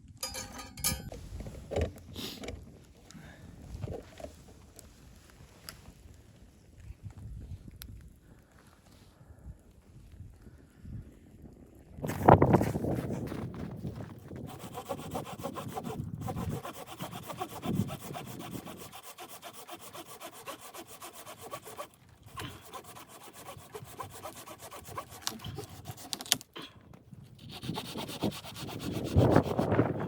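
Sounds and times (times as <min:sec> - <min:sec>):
hand saw cutting wood: 0:00.2 - 0:01.1, 0:14.4 - 0:26.4, 0:27.4 - 0:30.0.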